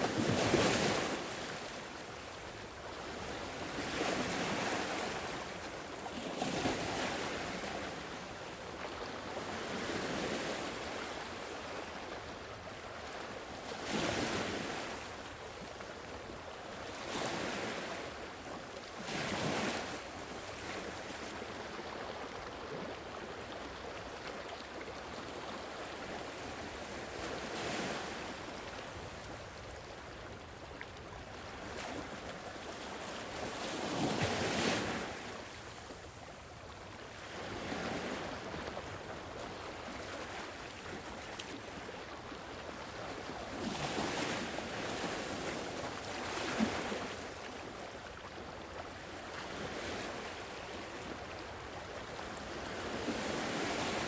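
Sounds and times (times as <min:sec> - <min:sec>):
sea waves breaking on shore: 0:37.2 - 0:54.0.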